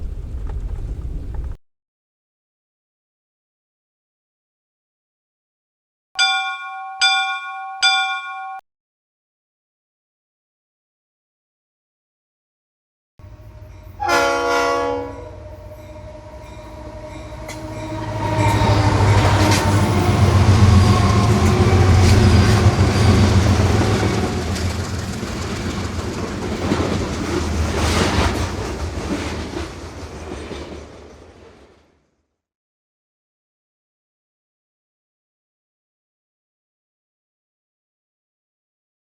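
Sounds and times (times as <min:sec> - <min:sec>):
train horn blast: 0:13.2 - 0:24.5
train rumbling past: 0:13.2 - 0:32.1
wheels clacking over rail joints: 0:17.3 - 0:31.8.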